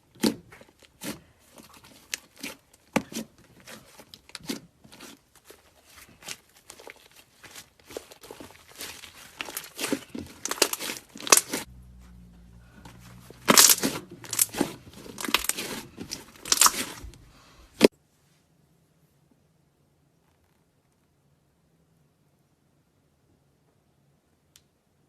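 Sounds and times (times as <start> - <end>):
slime crackling and popping: 6.1 - 11.7, 13.3 - 17.9.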